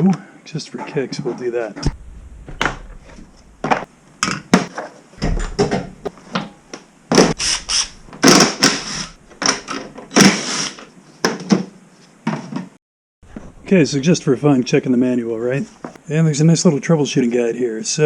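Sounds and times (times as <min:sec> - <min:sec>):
sharp clicks and knocks: 0:01.8 - 0:03.9, 0:05.2 - 0:10.2.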